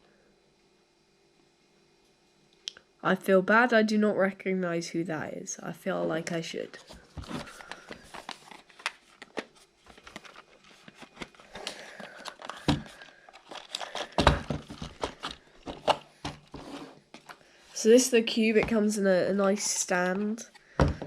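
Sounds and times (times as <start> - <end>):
packaging crinkling and rustling: 6.8 - 17.4.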